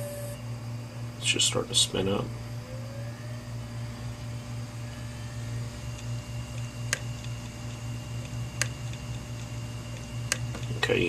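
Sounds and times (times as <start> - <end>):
hard drive spinning with whine: 0.0 - 11.0.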